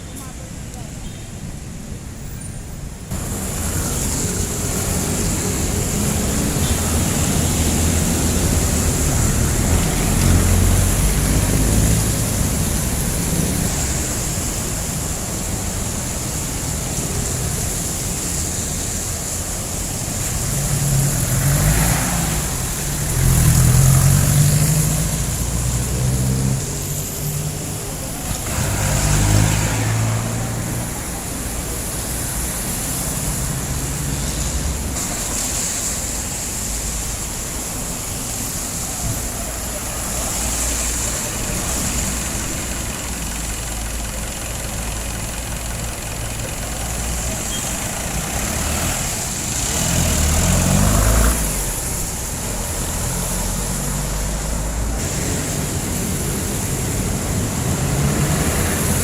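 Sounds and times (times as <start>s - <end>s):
diesel engines in street traffic: 0.0s - 59.0s
road noise of passing vehicles: 0.0s - 59.0s.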